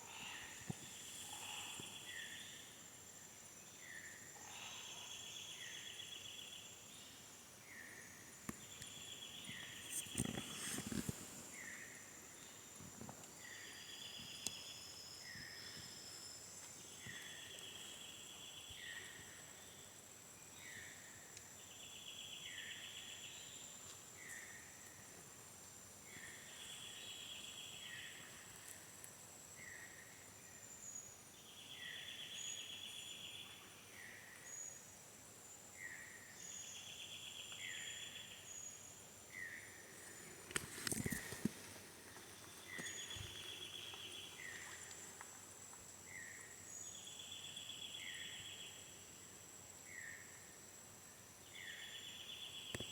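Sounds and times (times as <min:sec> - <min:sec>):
insects buzzing: 0:00.0 - 0:52.9.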